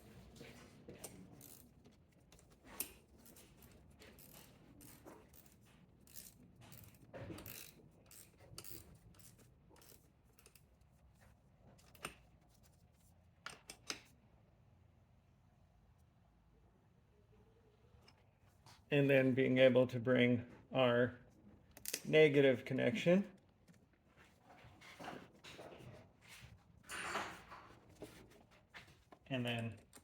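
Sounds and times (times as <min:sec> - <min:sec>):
ratchet wrench clicking: 0:04.2 - 0:10.6.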